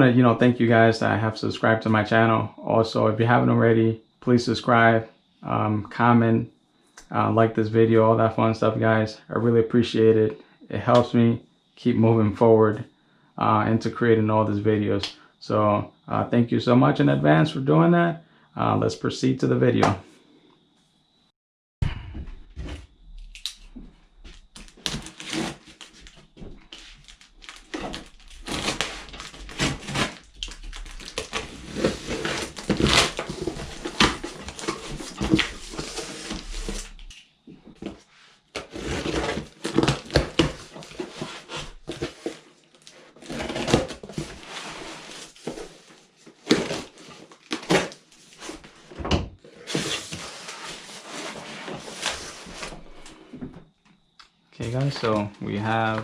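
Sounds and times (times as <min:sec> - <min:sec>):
cardboard packaging crinkling: 0:24.3 - 0:37.1, 0:38.6 - 0:48.8.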